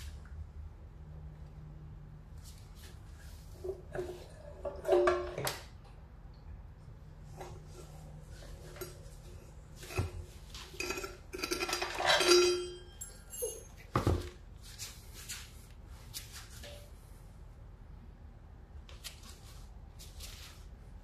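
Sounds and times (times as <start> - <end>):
scraping ringing clatter: 9.8 - 13.9
metal parts and tools clinking: 9.9 - 13.9.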